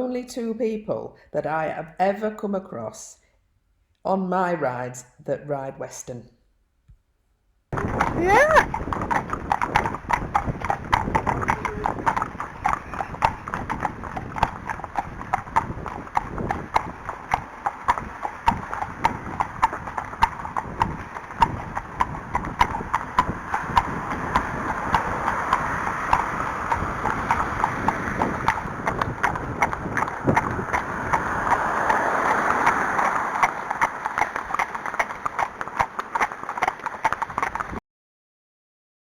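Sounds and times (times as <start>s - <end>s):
horse hooves clip-clopping on stony track: 7.8s - 37.8s.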